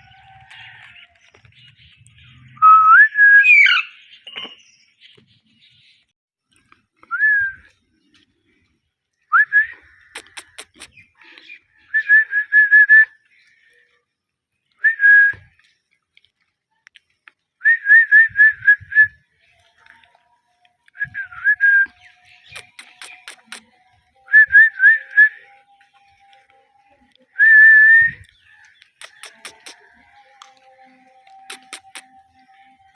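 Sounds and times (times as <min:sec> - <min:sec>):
sharp clicks: 0:10.1 - 0:11.0, 0:22.5 - 0:23.7, 0:28.2 - 0:29.8, 0:31.3 - 0:32.1.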